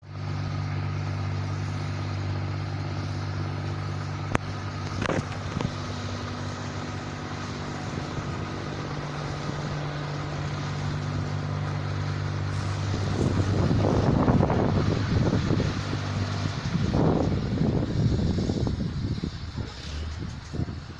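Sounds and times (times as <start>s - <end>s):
combine harvester engine running: 0.0s - 20.9s.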